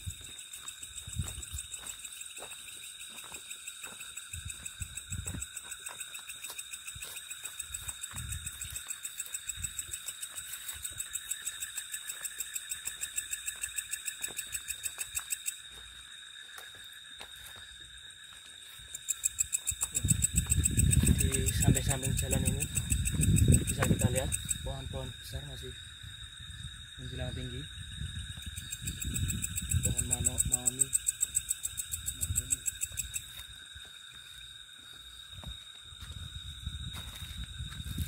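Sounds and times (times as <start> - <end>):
crickets and insects chirping: 0.0 - 38.0.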